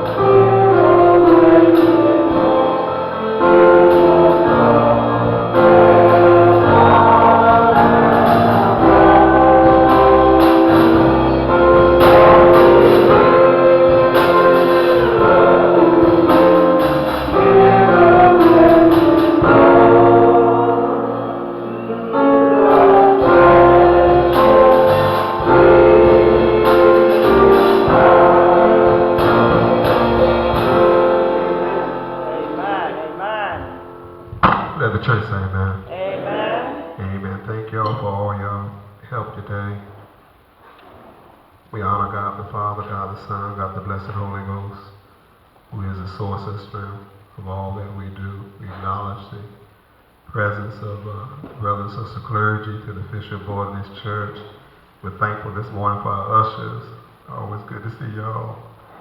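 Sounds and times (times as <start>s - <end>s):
gospel choir singing: 0.0s - 35.2s, 35.9s - 37.2s
instrumental accompaniment: 0.0s - 35.2s.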